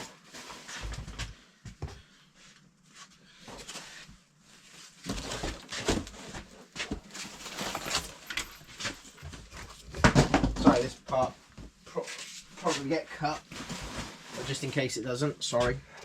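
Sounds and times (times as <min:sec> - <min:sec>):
packaging rustling and crinkling: 0:05.0 - 0:09.5.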